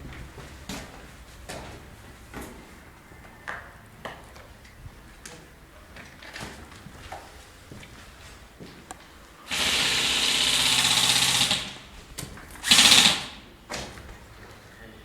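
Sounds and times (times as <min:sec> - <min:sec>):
electric gun firing bursts: 0:09.5 - 0:12.0, 0:12.6 - 0:13.5.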